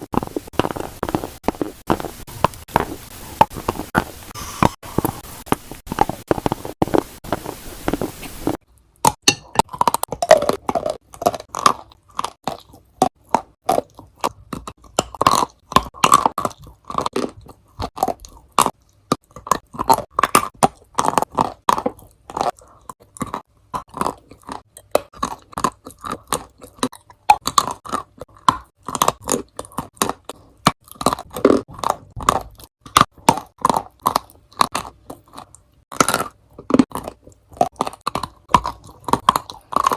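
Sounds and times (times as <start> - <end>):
crunching and chewing clay: 0.0 - 39.9.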